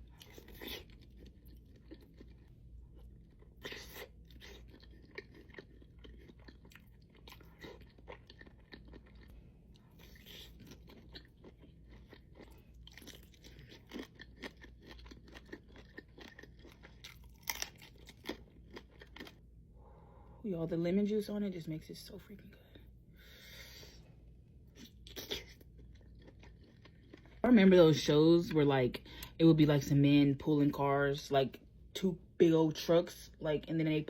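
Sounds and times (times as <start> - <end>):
crunching and wet chewing: 0.0 - 19.5, 24.7 - 27.4.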